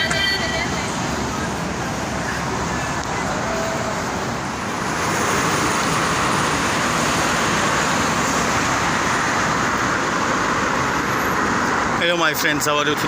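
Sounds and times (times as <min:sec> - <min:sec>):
road traffic noise: 0:00.0 - 0:13.0.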